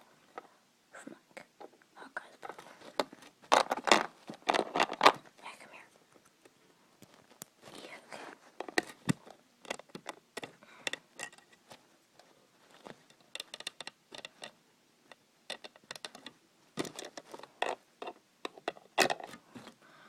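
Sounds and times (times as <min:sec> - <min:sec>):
plastic pieces clicking: 0:13.1 - 0:19.4.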